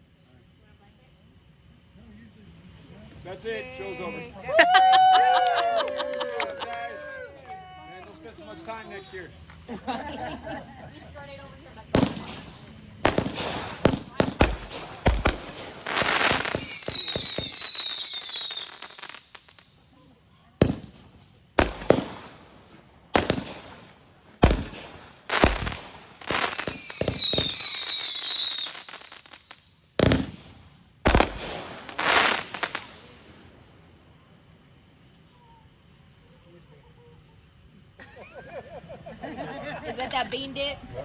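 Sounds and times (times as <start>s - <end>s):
fireworks hissing with falling whistles: 3.0s - 38.9s
fireworks sharp bangs: 11.2s - 19.7s, 20.5s - 33.8s.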